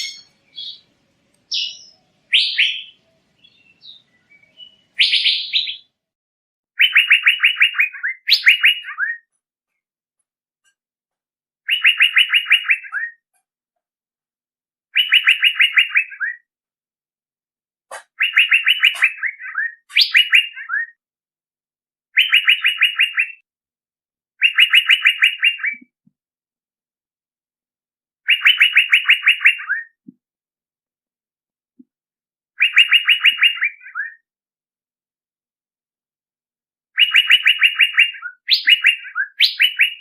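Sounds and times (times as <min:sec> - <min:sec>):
bird call repeated notes: 0:06.8 - 0:09.3, 0:11.6 - 0:13.2, 0:15.0 - 0:16.5, 0:17.9 - 0:21.0, 0:22.2 - 0:23.4, 0:24.4 - 0:25.9, 0:28.3 - 0:30.0, 0:32.6 - 0:34.3, 0:37.0 - 0:40.0.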